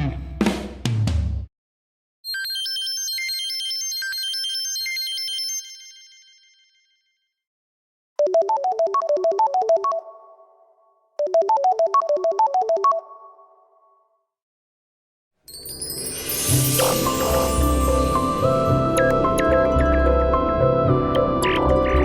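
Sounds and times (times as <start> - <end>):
high tinkling ringtone: 2.3 - 7.0, 15.5 - 19.2
low quick ringtone melody: 15.6 - 20.0.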